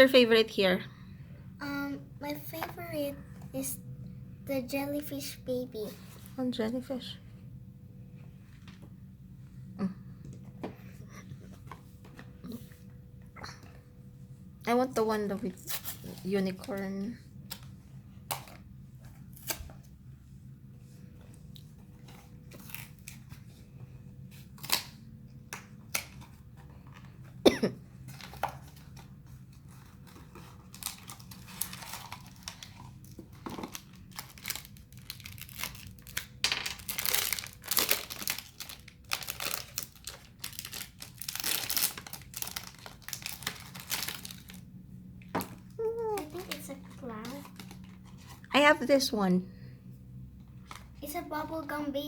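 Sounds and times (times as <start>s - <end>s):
wrapper crinkling and tearing: 22.5s - 23.4s, 24.5s - 25.1s, 28.1s - 44.7s, 45.4s - 48.4s.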